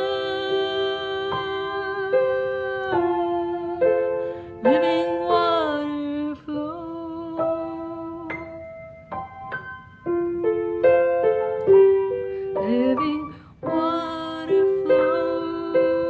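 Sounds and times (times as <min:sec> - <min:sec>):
slow piano notes and chords: 0:00.0 - 0:16.0.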